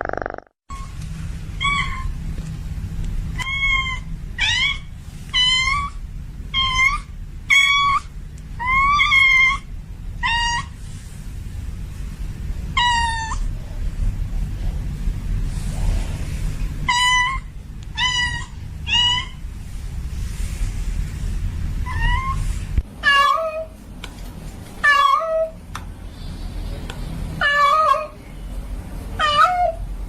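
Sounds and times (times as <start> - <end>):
cat meowing: 27.4 - 28.2, 29.2 - 29.8.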